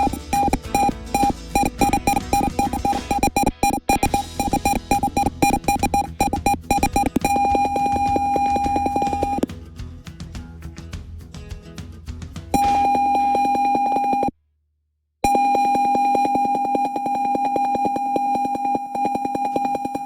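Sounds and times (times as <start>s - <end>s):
piezo buzzer alarm tone: 0.0s - 9.5s, 12.6s - 14.3s, 15.2s - 20.0s.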